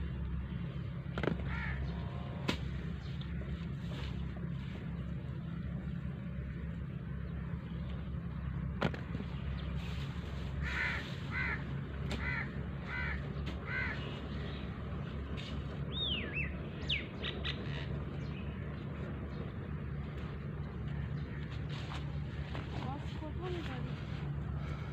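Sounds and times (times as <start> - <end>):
low engine hum: 0.0 - 24.9
crow cawing: 1.4 - 2.0, 10.6 - 14.6.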